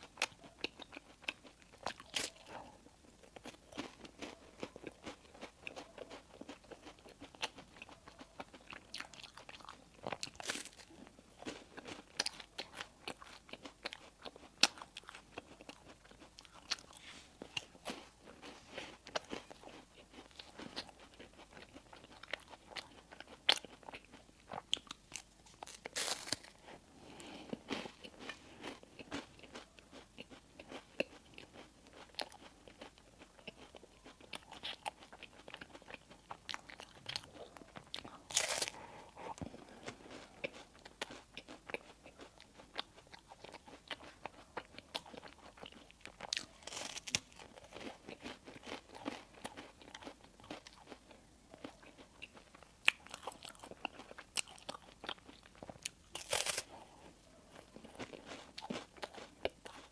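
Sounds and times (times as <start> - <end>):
chewing crunchy bread: 0.0 - 59.9
crisp crunching bursts: 25.0 - 29.6, 36.8 - 41.5, 56.1 - 56.9.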